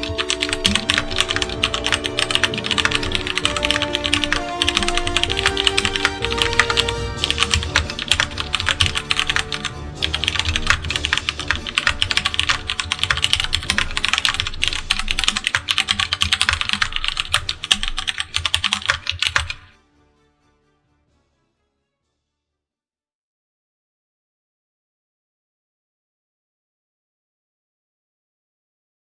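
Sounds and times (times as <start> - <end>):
mechanical keyboard typing: 0.0 - 19.7
background music: 0.0 - 22.6.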